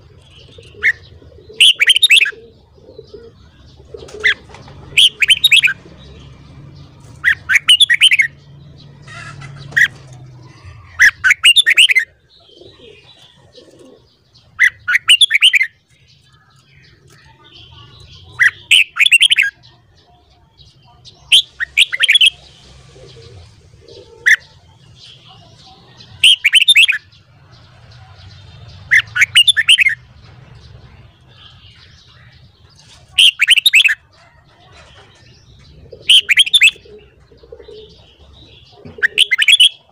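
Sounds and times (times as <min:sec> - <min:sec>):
bulbul whistled song: 0:26.2 - 0:27.1, 0:39.0 - 0:39.9.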